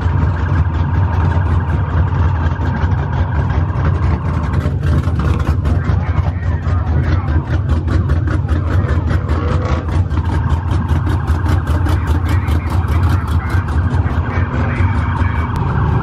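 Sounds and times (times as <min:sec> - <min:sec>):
car engine rumbling: 0:00.0 - 0:16.0.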